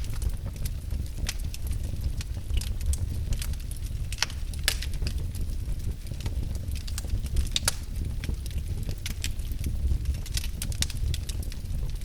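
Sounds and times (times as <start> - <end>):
fire flames rumbling: 0.0 - 12.0
logs crackling and popping: 0.0 - 12.0.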